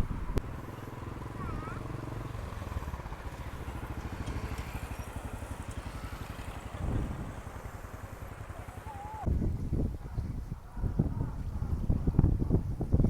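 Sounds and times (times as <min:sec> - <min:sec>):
engine throbbing: 0:00.0 - 0:09.3.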